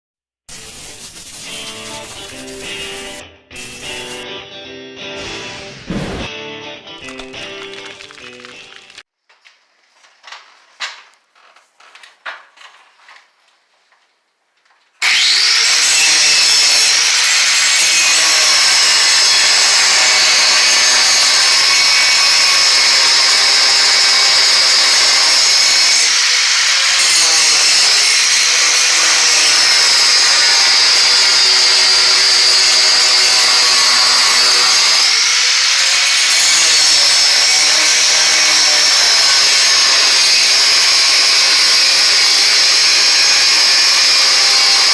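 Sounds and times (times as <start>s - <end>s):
power tool high whine: 15.0s - 44.9s.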